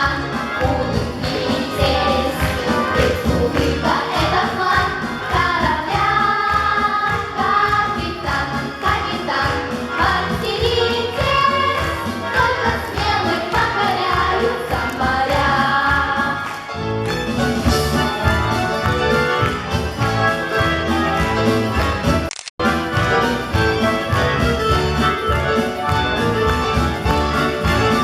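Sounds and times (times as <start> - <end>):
children's choir singing: 0.0 - 16.6
backing track with steady beat: 0.0 - 28.0.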